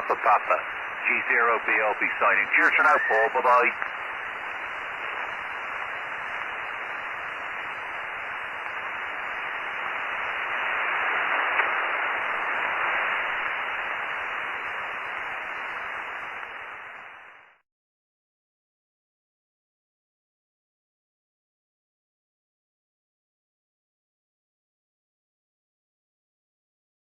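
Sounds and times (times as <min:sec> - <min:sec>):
radio receiver static hiss: 0:00.0 - 0:17.6.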